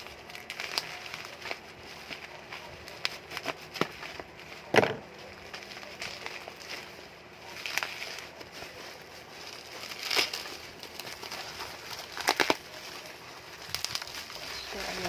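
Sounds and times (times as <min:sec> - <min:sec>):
cardboard crackling and rustling: 0:00.0 - 0:15.0
loud cardboard crack: 0:02.9 - 0:05.0, 0:09.8 - 0:12.6.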